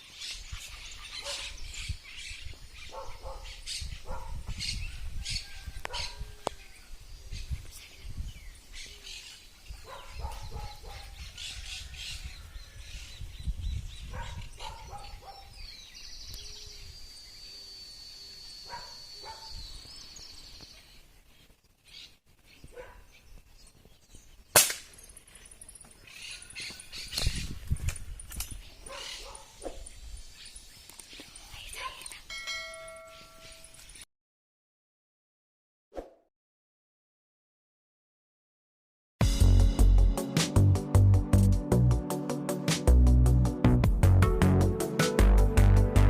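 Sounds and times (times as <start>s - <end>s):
birds calling: 0.0s - 34.0s
rifle shot: 24.6s - 24.9s
bird trill: 31.4s - 34.0s.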